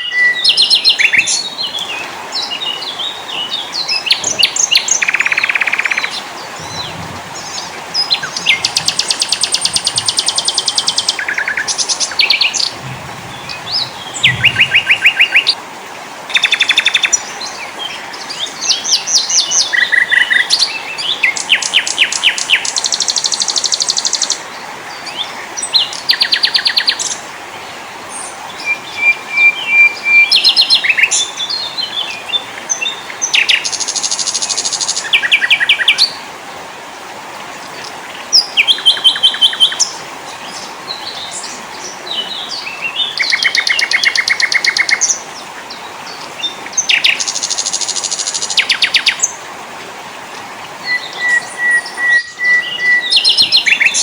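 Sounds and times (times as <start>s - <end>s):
songbirds trilling and chirping: 0.0s - 15.6s, 16.3s - 36.2s, 36.9s - 54.0s
steady background hiss: 0.0s - 54.0s.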